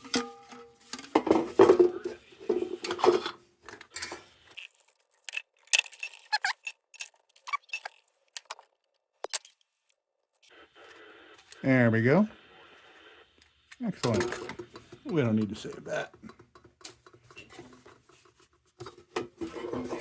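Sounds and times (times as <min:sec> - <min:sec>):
small metal parts clinking: 0:03.0 - 0:10.0.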